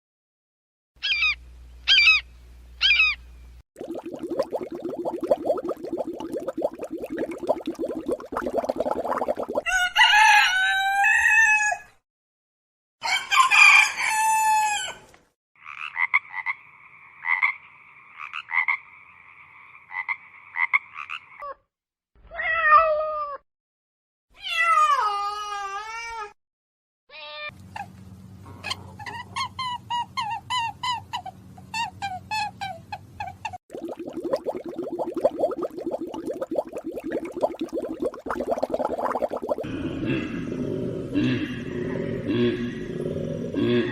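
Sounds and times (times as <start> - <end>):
rooster crowing: 9.6 - 12.0, 13.0 - 15.1.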